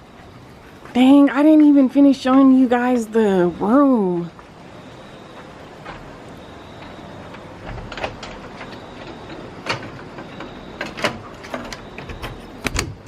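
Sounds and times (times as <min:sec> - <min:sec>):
steady background hiss: 0:00.0 - 0:13.0
sharp knocks and clatters: 0:06.8 - 0:13.0.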